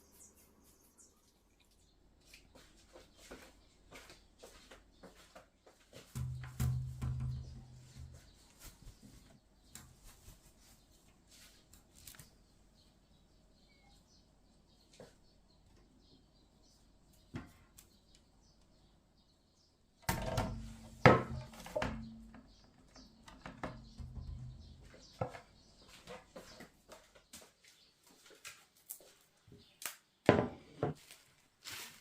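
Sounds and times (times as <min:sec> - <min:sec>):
faint bird chirps: 0:00.0 - 0:05.3, 0:07.2 - 0:19.8
kitchenware knocking and clattering: 0:20.1 - 0:24.9.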